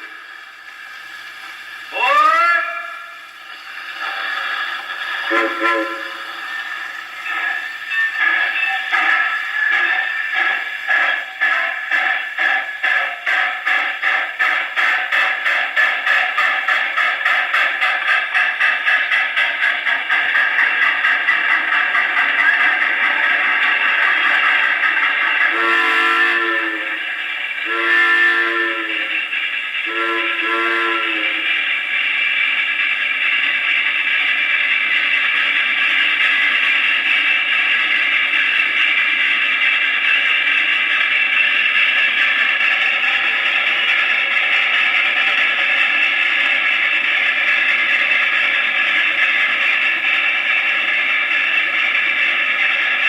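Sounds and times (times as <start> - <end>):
train sound effect on phonograph: 0.0 - 53.0
train whistle blasts: 5.3 - 6.4, 25.5 - 27.0, 27.6 - 31.5.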